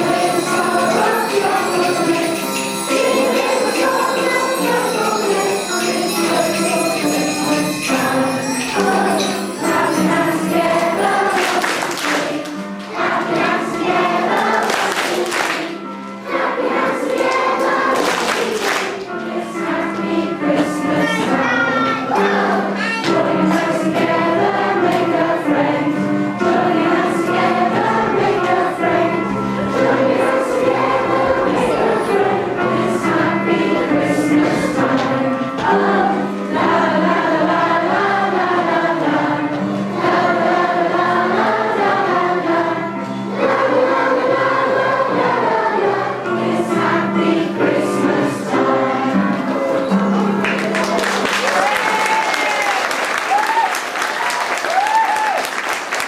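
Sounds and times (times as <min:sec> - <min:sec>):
jingle bells shaken: 0:00.0 - 0:12.4
children's choir singing: 0:00.0 - 0:56.0.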